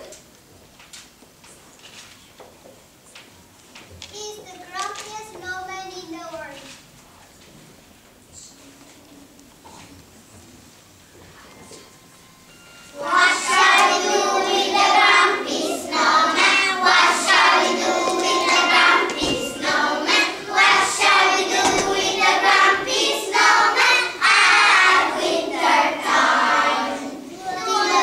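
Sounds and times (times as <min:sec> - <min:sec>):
children singing: 0:12.9 - 0:28.0.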